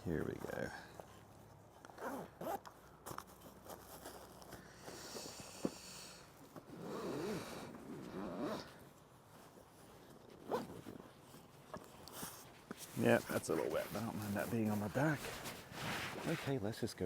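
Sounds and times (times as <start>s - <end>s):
zipper closing: 1.9s - 2.7s, 6.6s - 8.8s, 9.9s - 11.2s, 13.0s - 14.3s.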